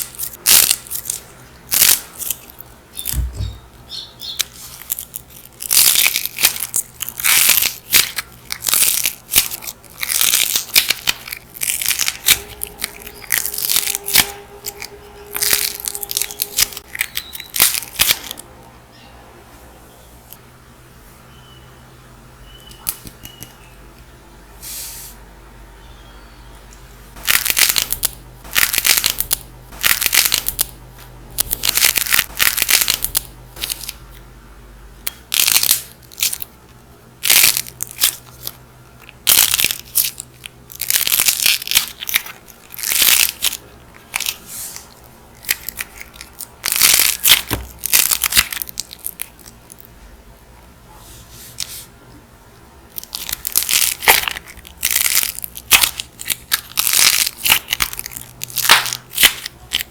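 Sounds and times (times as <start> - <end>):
dried clay crackling and crumbling: 0.0 - 18.7, 37.2 - 50.0, 52.9 - 59.9.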